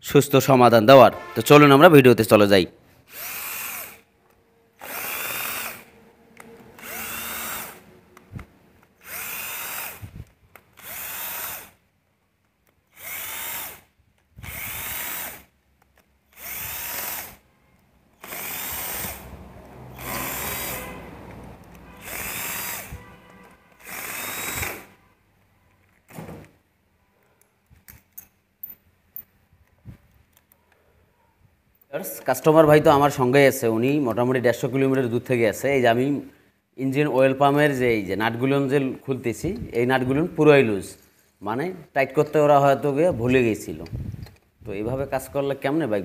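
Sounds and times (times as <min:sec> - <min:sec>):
power drill-driver running: 0:03.0 - 0:04.1, 0:04.7 - 0:11.9, 0:12.6 - 0:15.6, 0:16.2 - 0:17.5, 0:18.1 - 0:25.0.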